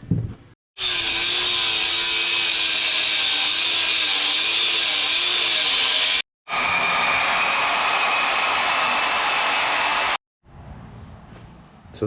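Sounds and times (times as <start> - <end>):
power saw cutting steel: 0.8 - 10.2.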